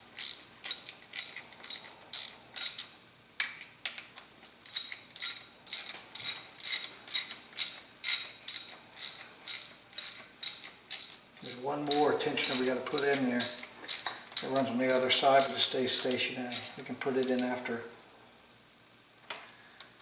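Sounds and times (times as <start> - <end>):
ratchet wrench clicking: 0.2 - 2.9, 4.6 - 17.5.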